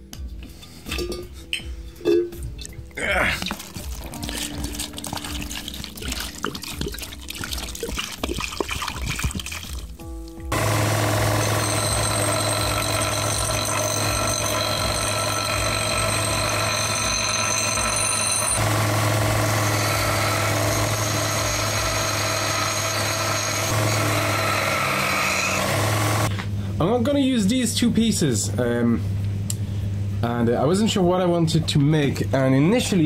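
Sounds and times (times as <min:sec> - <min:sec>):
power tool motor humming: 0:10.5 - 0:26.3.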